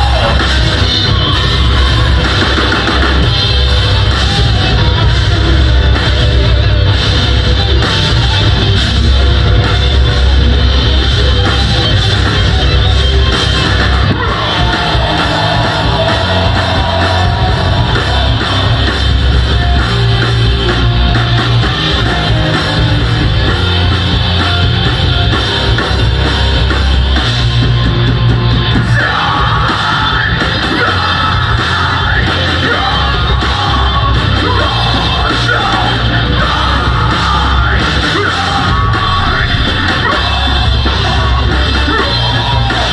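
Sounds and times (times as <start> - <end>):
bass: 0.0 - 42.9
distorted guitars: 0.0 - 42.9
drums: 0.0 - 42.9
screamed vocals: 14.0 - 18.9, 28.8 - 42.9.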